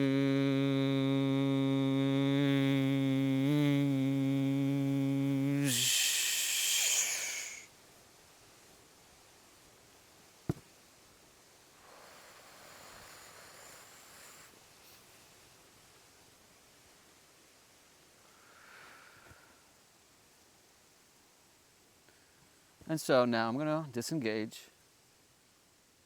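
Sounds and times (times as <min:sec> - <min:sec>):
man humming low note: 0:00.0 - 0:07.6
breathy exhale: 0:05.6 - 0:07.7, 0:11.8 - 0:14.6, 0:18.2 - 0:19.7.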